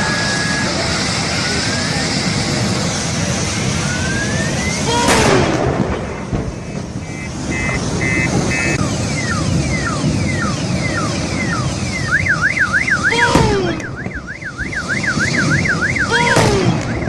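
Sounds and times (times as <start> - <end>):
rising whine: 0.0 - 17.0
road noise: 0.0 - 17.0
car alarm beeping and wailing: 3.8 - 5.4, 6.6 - 17.0
sharp crash: 4.9 - 6.5
falling tone: 12.0 - 17.0.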